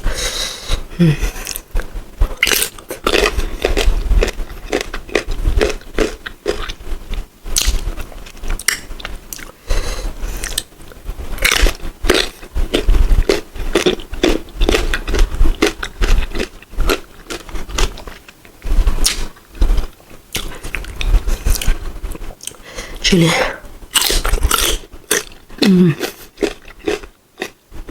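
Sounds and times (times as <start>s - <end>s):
chewing: 1.3s - 9.6s, 11.4s - 22.6s, 23.9s - 27.9s.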